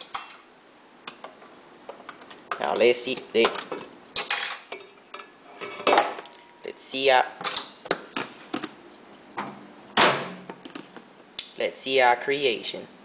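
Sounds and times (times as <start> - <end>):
metal utensil clattering on pan: 0.0 - 0.5, 3.4 - 6.2.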